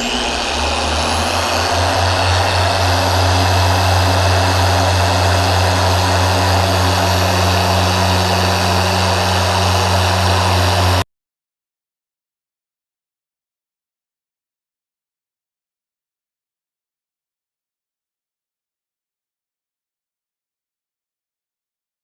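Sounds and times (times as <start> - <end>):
orbital polisher whining: 0.0 - 11.0.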